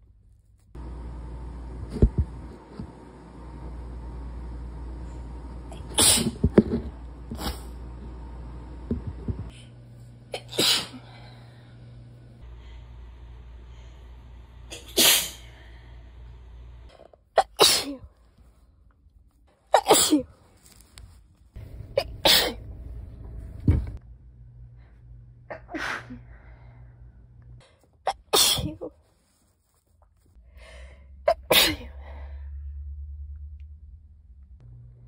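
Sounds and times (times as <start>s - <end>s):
low steady background hum: 0.0s - 35.0s
woman sneezing: 10.4s - 11.0s, 28.1s - 28.9s, 31.3s - 31.9s.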